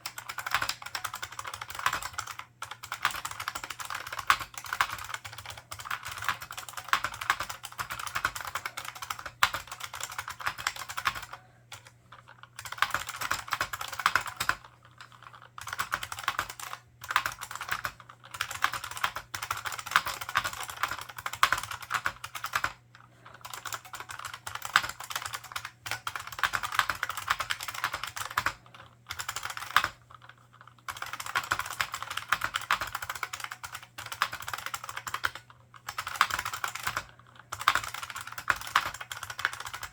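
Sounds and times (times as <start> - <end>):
fast keyboard typing clacks: 0.0 - 11.9, 12.6 - 14.7, 15.3 - 22.8, 23.4 - 30.0, 30.9 - 39.9.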